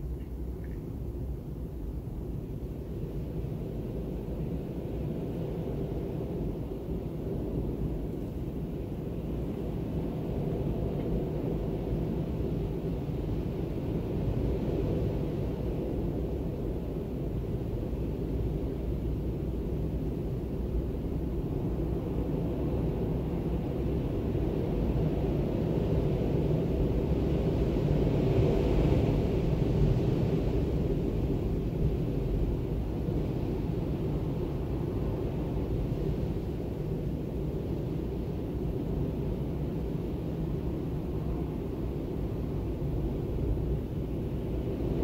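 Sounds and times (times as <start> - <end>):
howling storm wind: 0.0 - 45.0.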